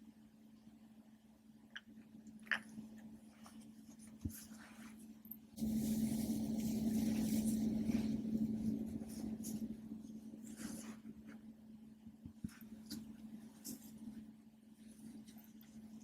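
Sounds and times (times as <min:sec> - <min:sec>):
steady low hum: 0:00.0 - 0:16.0
squishing rubbing noise: 0:03.4 - 0:11.5.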